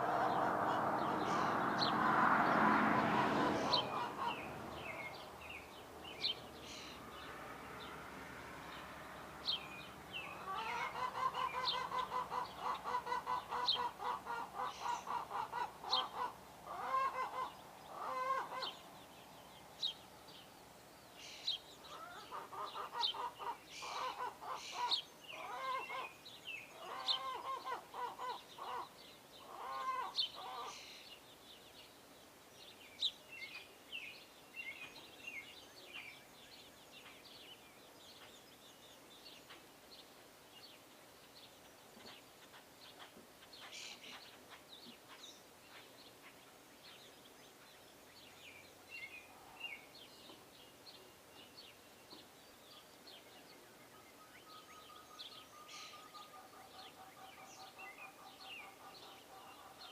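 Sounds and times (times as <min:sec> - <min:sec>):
small birds chirping: 0:00.0 - 0:59.9
bird honking calls: 0:10.3 - 0:18.8, 0:21.9 - 0:26.1, 0:26.8 - 0:30.8.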